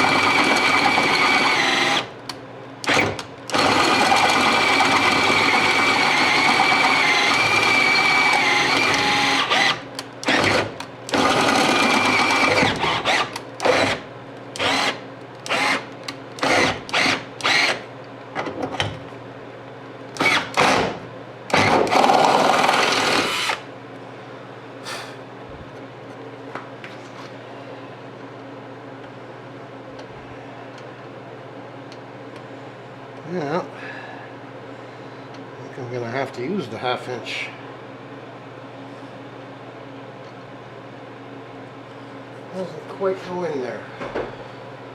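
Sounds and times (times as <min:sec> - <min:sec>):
electric drill boring metal: 0:00.0 - 0:02.1, 0:02.9 - 0:14.0, 0:14.6 - 0:17.8, 0:20.2 - 0:20.8, 0:21.5 - 0:23.6.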